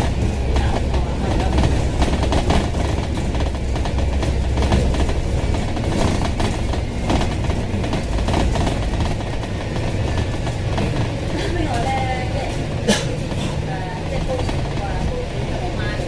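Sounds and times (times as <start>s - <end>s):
bus body rattling and knocking: 0.0s - 16.0s
bus engine drone: 0.0s - 16.0s
road noise: 0.0s - 16.0s.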